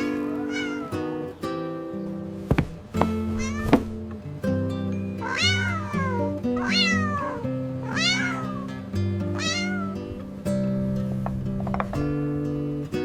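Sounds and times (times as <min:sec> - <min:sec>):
cat meowing: 0:00.0 - 0:01.3, 0:03.4 - 0:03.9, 0:05.2 - 0:10.0
soft background music: 0:00.0 - 0:13.0.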